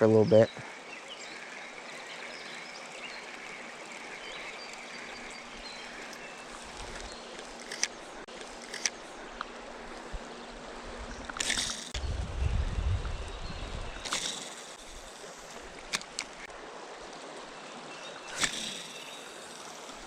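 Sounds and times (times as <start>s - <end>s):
sharp clicks: 5.7s - 9.5s, 11.2s - 12.0s, 14.0s - 14.9s, 15.7s - 16.5s.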